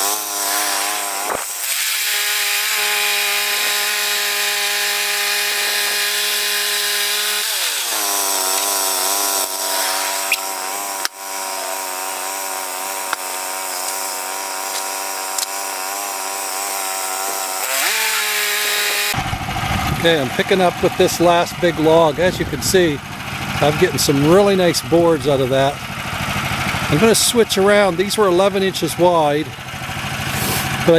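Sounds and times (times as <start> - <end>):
bandsaw mill engine running: 0.0 - 30.9
sharp clicks: 13.1 - 15.7.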